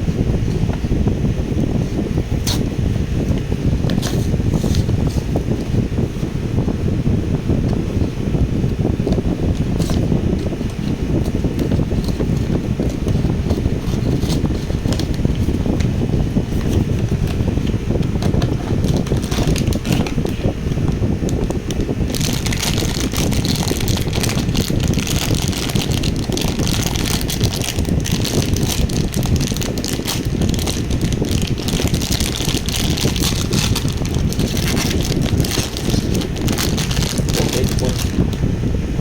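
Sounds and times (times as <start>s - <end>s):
low rumble on microphone: 0.0s - 39.0s
plastic packaging crinkling: 16.4s - 38.2s.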